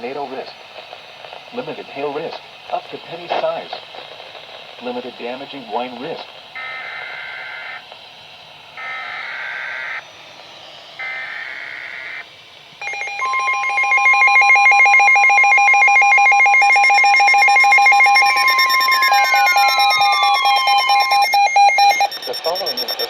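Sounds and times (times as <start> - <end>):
warbling digital data tones: 8.8 - 23.0.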